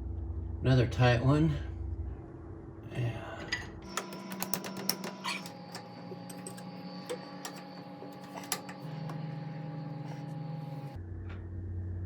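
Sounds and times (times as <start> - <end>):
wrench clicking on metal: 3.9 - 8.8.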